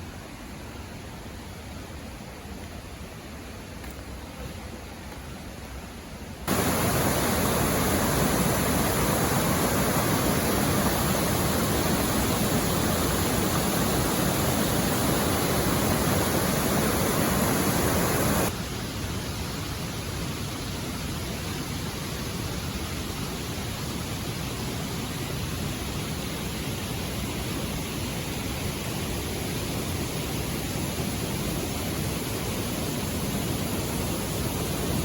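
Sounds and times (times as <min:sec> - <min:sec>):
running water: 0:06.5 - 0:18.5.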